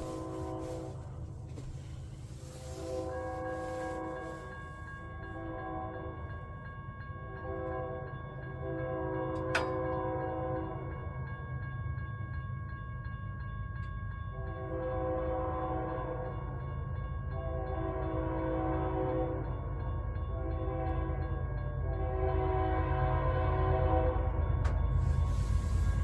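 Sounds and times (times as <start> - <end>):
locomotive air horn blasts: 0.0 - 1.7, 2.3 - 4.7, 14.6 - 16.3, 17.5 - 19.4, 20.6 - 21.2, 21.9 - 24.3
moving train rumble: 0.0 - 26.0.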